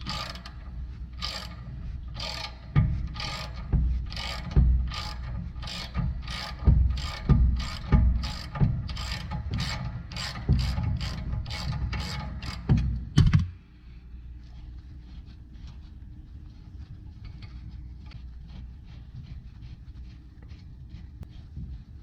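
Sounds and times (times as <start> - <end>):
ratchet wrench clicking: 3.2 - 12.6.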